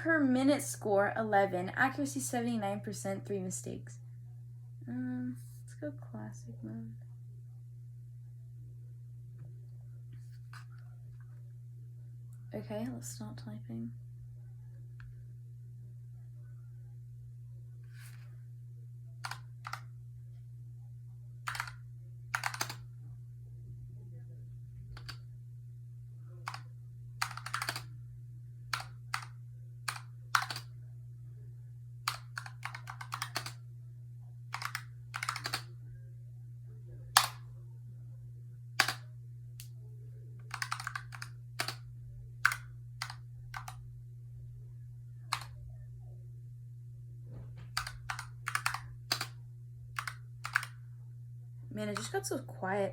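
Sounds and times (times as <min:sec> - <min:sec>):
steady low hum: 0:00.0 - 0:52.9
keyboard keystroke clicks: 0:19.2 - 0:19.8, 0:21.5 - 0:21.8, 0:22.4 - 0:22.8, 0:24.9 - 0:25.2, 0:27.2 - 0:27.9, 0:29.9 - 0:30.7, 0:32.1 - 0:33.6, 0:34.6 - 0:35.7, 0:37.2 - 0:37.4, 0:38.8 - 0:39.0, 0:40.5 - 0:41.8, 0:42.4 - 0:43.8, 0:47.7 - 0:49.3, 0:50.0 - 0:50.7.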